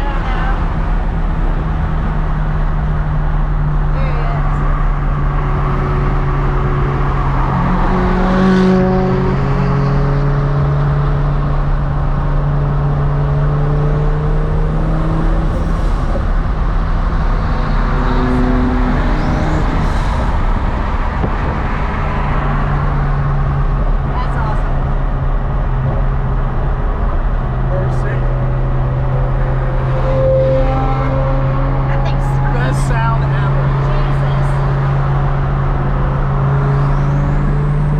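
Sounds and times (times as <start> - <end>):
car engine drone: 0.0 - 37.9
road noise: 0.0 - 37.9.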